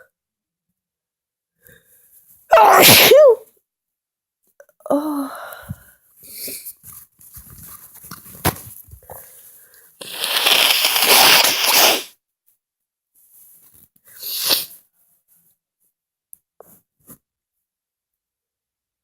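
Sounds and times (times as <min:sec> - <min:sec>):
person sneezing loudly: 0:02.5 - 0:03.4, 0:10.0 - 0:12.1, 0:14.2 - 0:14.7.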